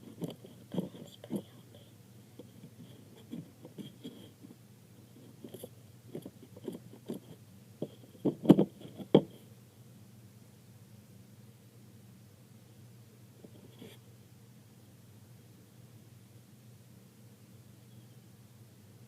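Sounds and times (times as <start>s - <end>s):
low steady hum: 0.0s - 19.0s
thumps: 5.2s - 9.4s.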